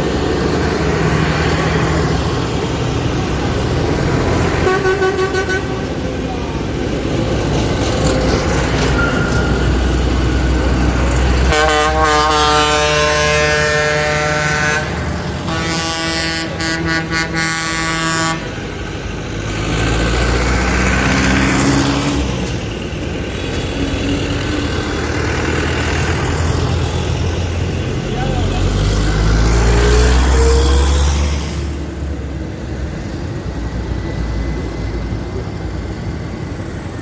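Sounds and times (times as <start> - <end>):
engine revving: 0.0 - 33.0
tractor engines running: 0.0 - 37.0
horn blasts: 4.3 - 6.2, 11.2 - 18.7.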